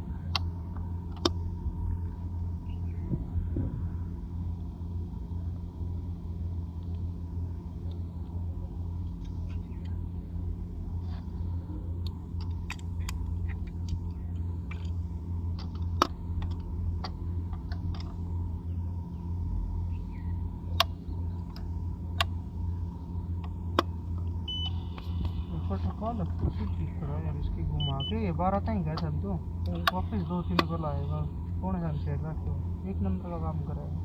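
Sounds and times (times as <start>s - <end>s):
faint steady tone: 0.0s - 34.0s
low mechanical hum: 0.0s - 34.0s.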